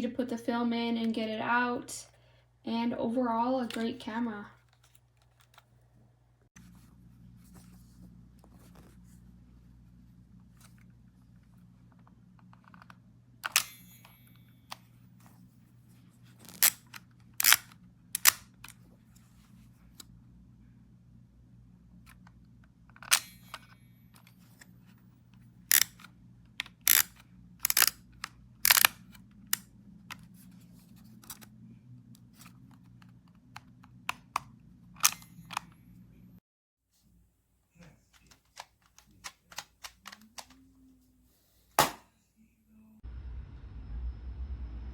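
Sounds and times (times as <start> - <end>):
film camera plastic clicks: 12.6 - 13.8, 16.4 - 18.8, 23.0 - 24.7, 25.7 - 30.2, 33.6 - 35.8
low rumble: 43.0 - 44.9.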